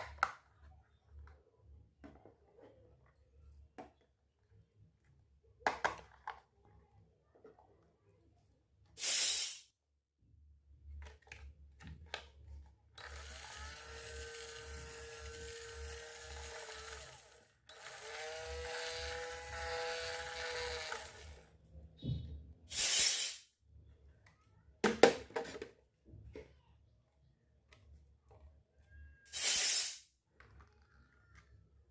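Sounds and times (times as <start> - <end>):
toy motor whining: 13.0 - 21.6
loud hissing bursts: 22.7 - 23.4, 29.3 - 30.0.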